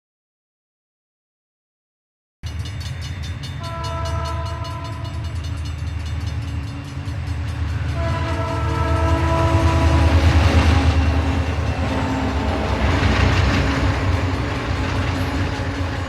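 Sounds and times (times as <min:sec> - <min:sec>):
train rumbling and clattering: 0:02.5 - 0:16.0
train horn blasts: 0:03.6 - 0:05.7, 0:07.1 - 0:15.5.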